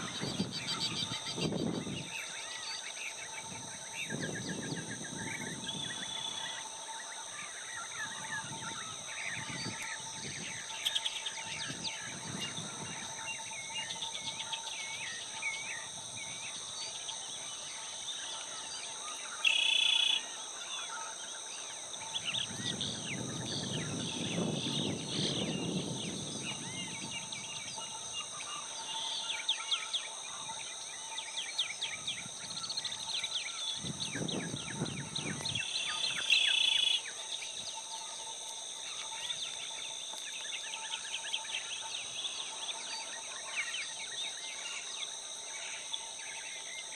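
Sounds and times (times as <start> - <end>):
high insect drone: 0.0 - 46.9.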